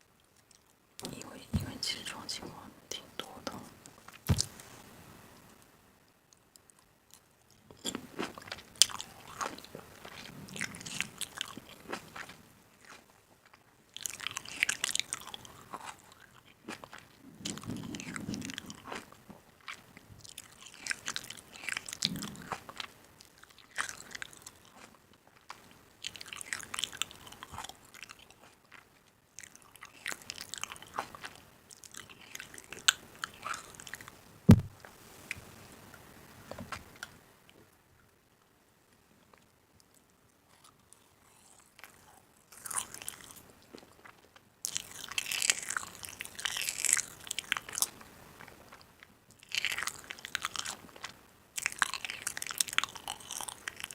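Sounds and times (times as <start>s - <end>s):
crunchy food chewing: 6.3s - 35.9s, 39.3s - 53.9s
sharp thump: 34.5s - 34.7s.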